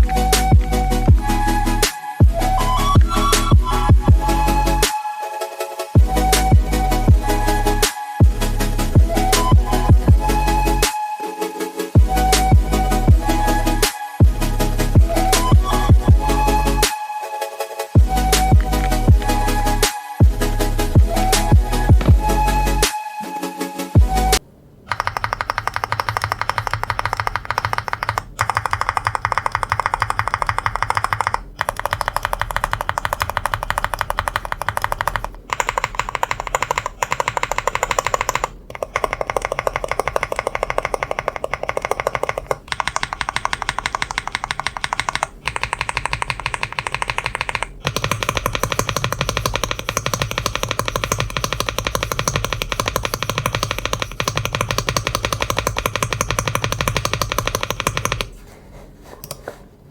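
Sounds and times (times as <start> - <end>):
mechanical keyboard typing: 18.5 - 19.3, 24.9 - 58.3.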